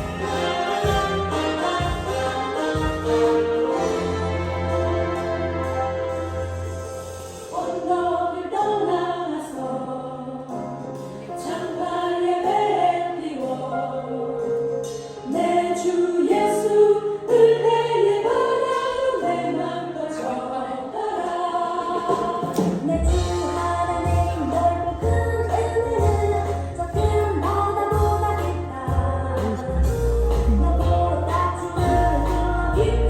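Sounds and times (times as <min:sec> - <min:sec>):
choir singing worship song: 0:00.0 - 0:10.7, 0:11.3 - 0:14.5, 0:15.2 - 0:30.0, 0:30.7 - 0:33.0
low bass beat: 0:26.0 - 0:33.0.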